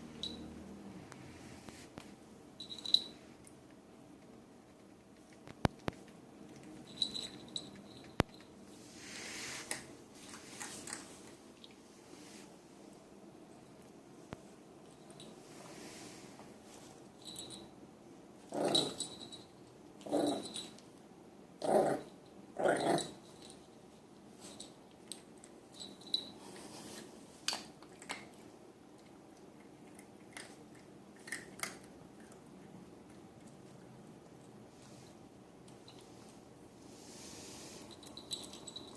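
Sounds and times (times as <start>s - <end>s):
puppy growling: 18.5s - 19.1s, 20.0s - 20.6s, 21.6s - 23.2s.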